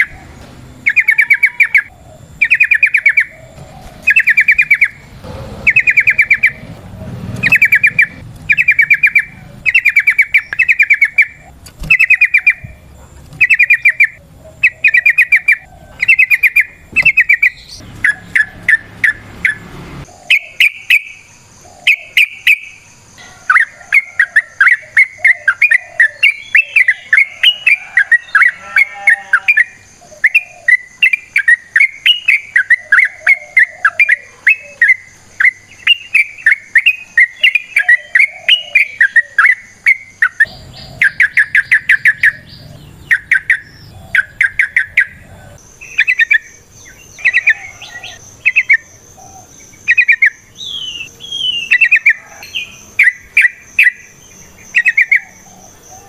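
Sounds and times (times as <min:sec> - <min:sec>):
bird singing chattering notes: 0:00.0 - 0:56.0
low rumble: 0:05.0 - 0:08.5.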